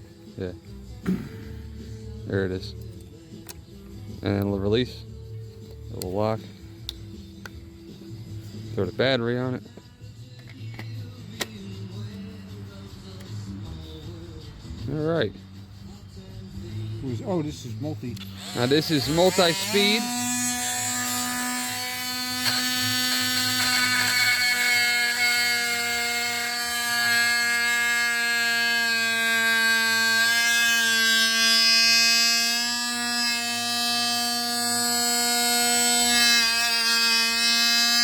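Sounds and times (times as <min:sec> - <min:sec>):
oscillating multi-tool buzzing: 0:18.2 - 0:38.0.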